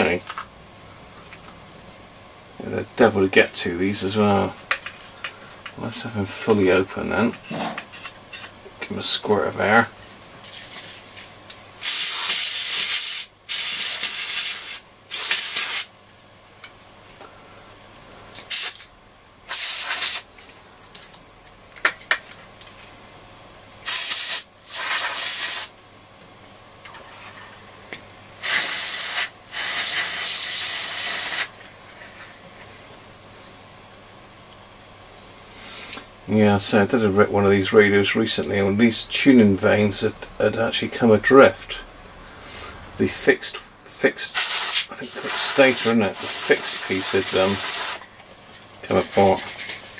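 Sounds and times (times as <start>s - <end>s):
compressed air blasts hissing: 11.8s - 15.9s, 18.5s - 18.8s, 19.5s - 20.3s, 23.8s - 25.7s, 28.3s - 31.5s, 44.3s - 48.1s.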